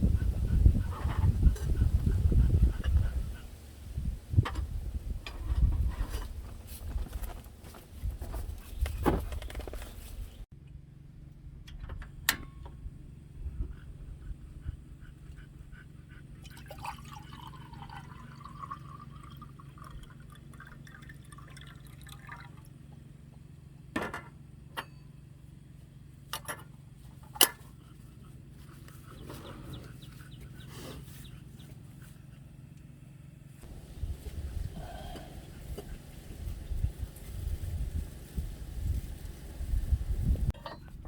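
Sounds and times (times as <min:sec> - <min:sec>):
liquid pouring into container: 0:16.5 - 0:22.7.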